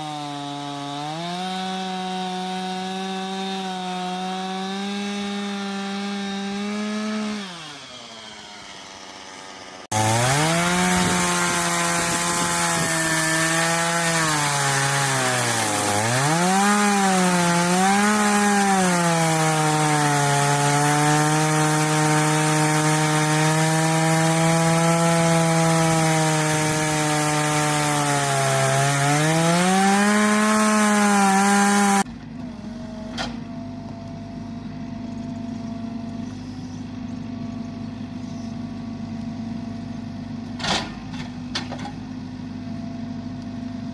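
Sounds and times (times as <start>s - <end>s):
saw blade cutting log: 0.0s - 32.1s
sawmill engine running: 0.0s - 43.9s.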